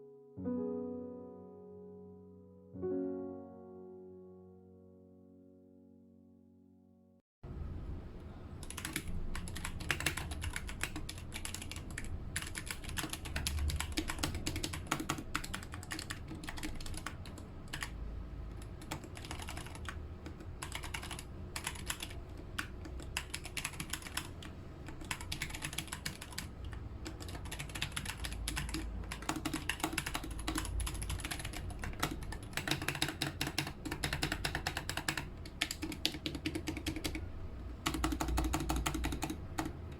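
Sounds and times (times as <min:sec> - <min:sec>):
mechanical keyboard typing: 0:08.6 - 0:39.9.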